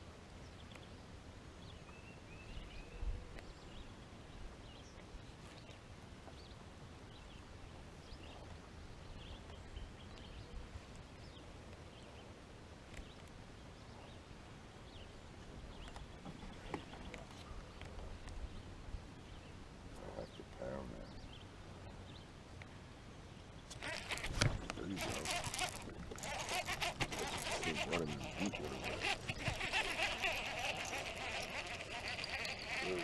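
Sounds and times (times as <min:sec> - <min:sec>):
birds chirping: 0:14.8 - 0:33.0.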